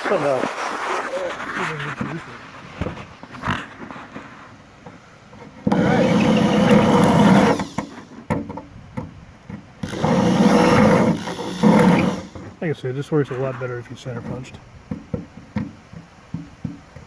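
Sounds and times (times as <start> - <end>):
power drill cutting sheet metal: 5.7 - 8.1, 9.8 - 12.6.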